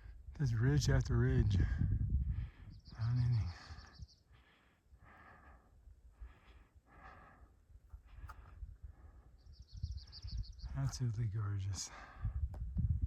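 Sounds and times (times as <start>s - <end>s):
person breathing softly: 1.7s - 10.2s, 11.8s - 12.5s.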